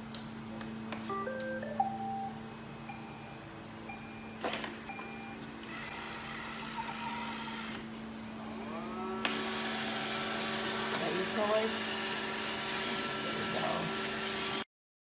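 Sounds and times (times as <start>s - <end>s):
steady low hum: 0.0s - 9.2s.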